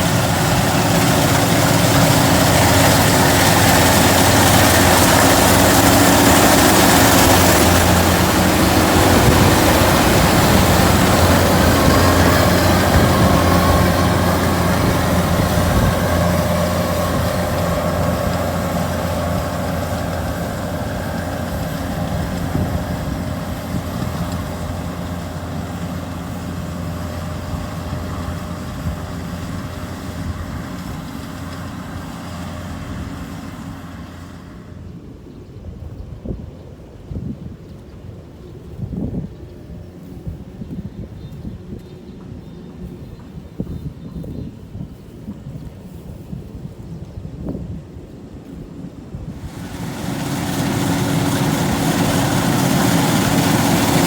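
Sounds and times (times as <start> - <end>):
diesel engine running: 0.0 - 34.8, 49.3 - 54.0.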